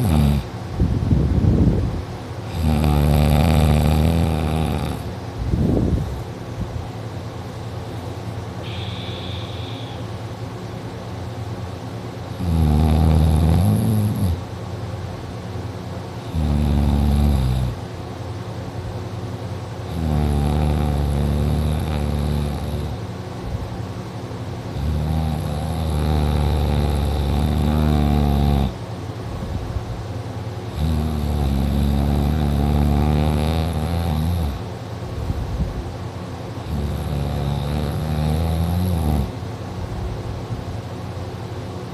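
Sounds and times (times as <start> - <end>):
heavy snoring: 0.0 - 0.5, 2.4 - 5.1, 12.3 - 14.4, 16.2 - 17.8, 19.9 - 23.0, 24.7 - 28.8, 30.7 - 34.7, 36.6 - 39.4.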